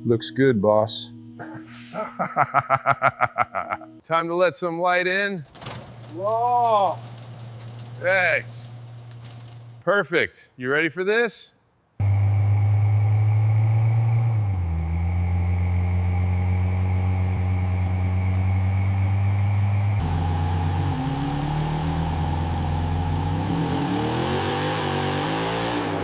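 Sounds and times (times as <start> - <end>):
car engine idling: 5.4 - 9.8, 12.0 - 24.5.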